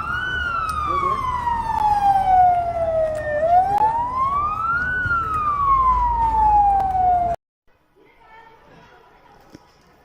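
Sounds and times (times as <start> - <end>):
emergency vehicle siren wailing: 0.0 - 7.4.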